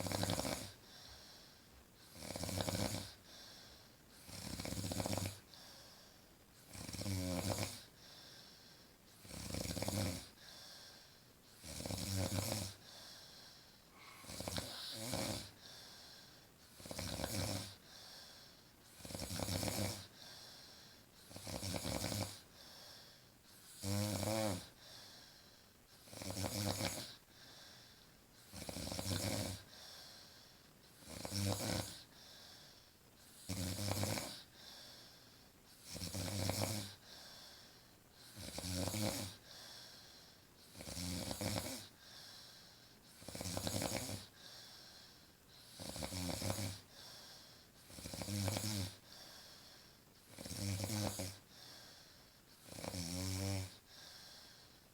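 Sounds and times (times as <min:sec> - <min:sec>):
woman snoring: 0:00.0 - 0:00.8, 0:02.1 - 0:03.2, 0:04.2 - 0:05.4, 0:06.7 - 0:07.9, 0:09.2 - 0:10.4, 0:11.6 - 0:12.8, 0:13.9 - 0:15.6, 0:16.8 - 0:17.8, 0:19.0 - 0:20.1, 0:21.3 - 0:22.5, 0:23.8 - 0:24.8, 0:26.1 - 0:27.2, 0:28.5 - 0:29.7, 0:31.0 - 0:32.1, 0:33.4 - 0:34.5, 0:35.8 - 0:37.0, 0:38.3 - 0:39.5, 0:40.7 - 0:41.9, 0:43.2 - 0:44.4, 0:45.7 - 0:46.9, 0:47.9 - 0:49.0, 0:50.3 - 0:51.4, 0:52.6 - 0:53.8
quiet breathing: 0:00.0 - 0:54.9.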